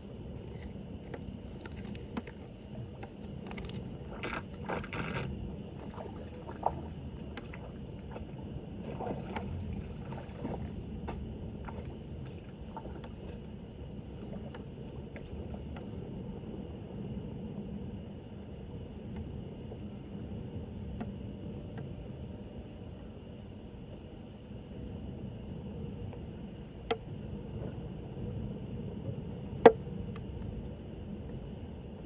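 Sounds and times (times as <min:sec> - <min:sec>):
steady low rumble: 0:00.0 - 0:32.0
floodwater sloshing over drain: 0:00.4 - 0:13.5
short splashes and scrapes: 0:00.5 - 0:13.4.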